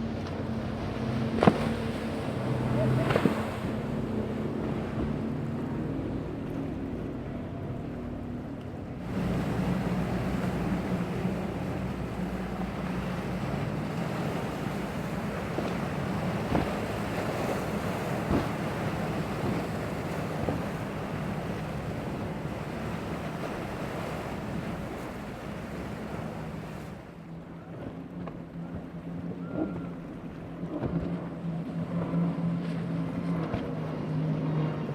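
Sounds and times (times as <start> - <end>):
surf noise: 0.0 - 7.8, 9.0 - 27.0
outboard motor drone: 0.0 - 34.9
wind on microphone: 9.0 - 26.9.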